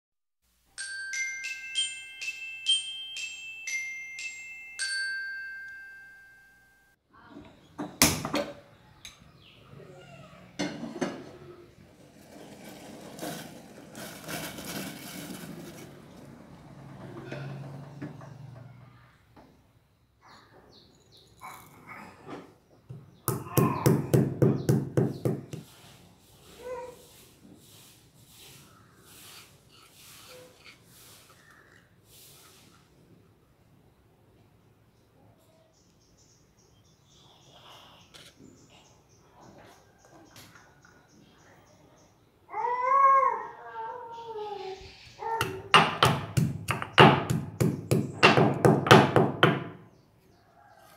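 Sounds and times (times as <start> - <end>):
glockenspiel-like chime jingle: 0.8 - 7.0
pestle pounding in a mortar: 45.8 - 49.7.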